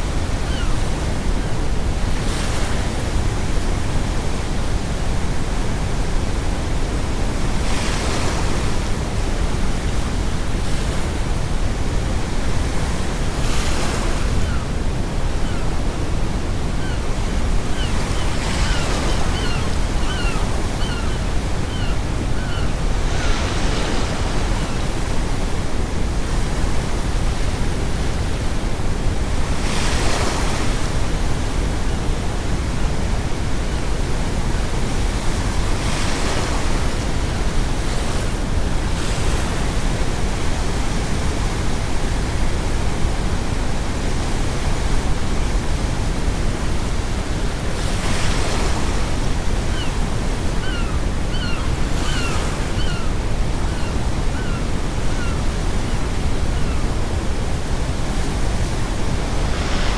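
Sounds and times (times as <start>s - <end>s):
ocean waves crashing on shore: 0.0s - 59.9s
gull calling: 17.8s - 23.8s, 50.6s - 55.5s.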